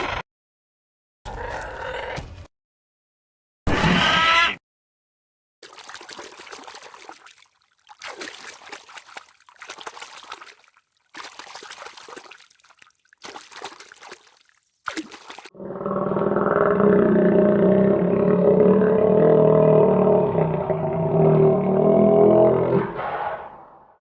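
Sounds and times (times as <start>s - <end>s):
trickling water-like noise: 5.6s - 15.6s.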